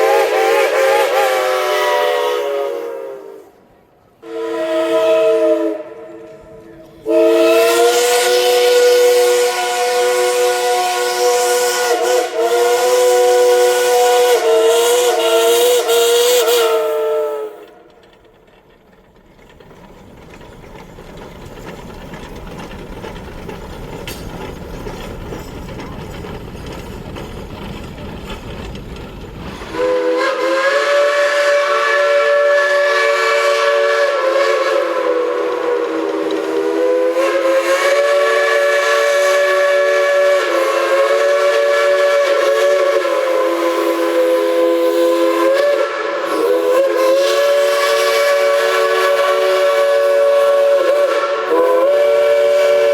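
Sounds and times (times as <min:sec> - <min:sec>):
steam locomotive whistle: 0:00.0 - 0:18.0, 0:29.5 - 0:52.9.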